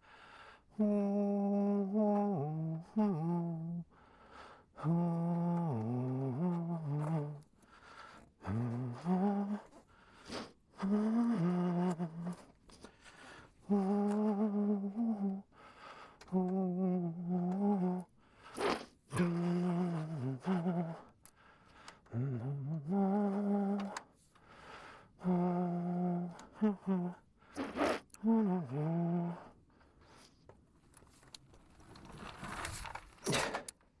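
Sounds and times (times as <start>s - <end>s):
man humming a tune: 0.7s - 3.9s, 4.8s - 7.5s, 8.4s - 9.7s, 10.3s - 12.5s, 13.6s - 15.5s, 16.2s - 18.1s, 19.1s - 21.1s, 22.0s - 24.1s, 25.2s - 29.6s.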